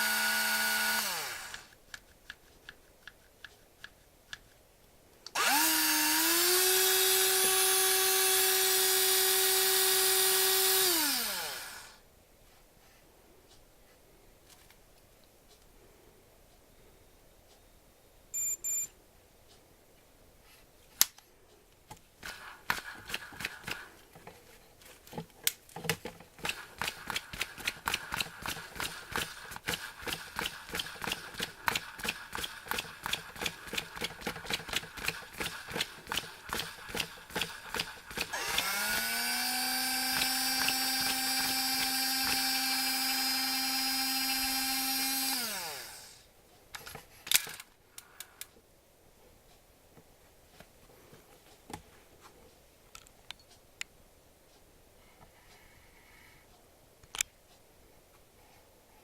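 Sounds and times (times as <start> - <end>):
electric reel motor spinning: 0.0 - 1.7, 5.4 - 12.0, 26.4 - 46.2
short electronic beeps: 18.3 - 19.0.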